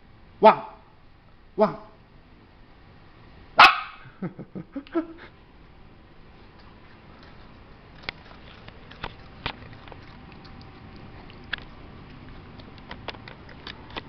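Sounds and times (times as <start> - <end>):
low background hum: 0.0 - 14.0.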